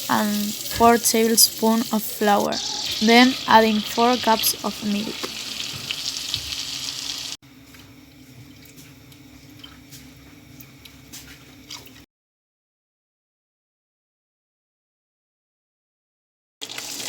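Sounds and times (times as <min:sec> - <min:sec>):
milk sizzling in hot pot: 0:00.0 - 0:07.4, 0:16.6 - 0:17.0.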